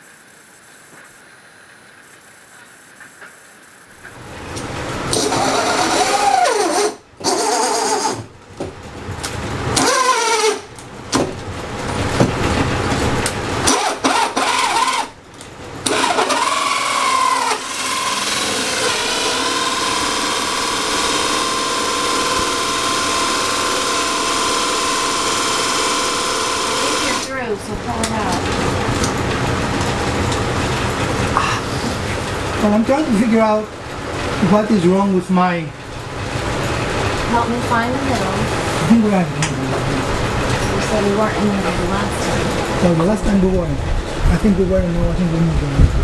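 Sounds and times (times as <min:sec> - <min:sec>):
electric drill whining: 0:05.1 - 0:08.3, 0:09.8 - 0:10.7, 0:13.7 - 0:15.2, 0:15.8 - 0:27.3.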